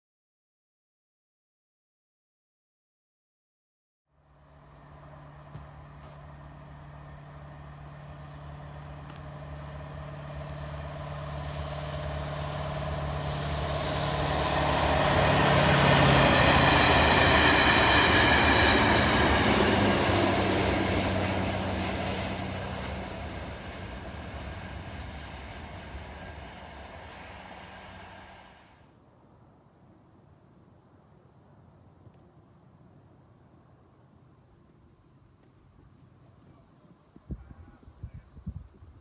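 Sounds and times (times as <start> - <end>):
train passing: 4.2 - 29.6
wheels rolling on rails: 4.6 - 17.5.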